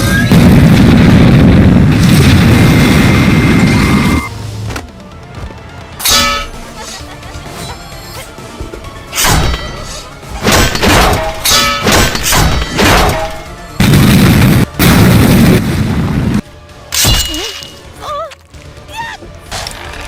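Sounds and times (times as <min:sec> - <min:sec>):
action booms and impacts: 0:00.0 - 0:04.2, 0:10.4 - 0:16.4
background music: 0:00.0 - 0:20.0
continuous blast of noise: 0:00.0 - 0:20.0.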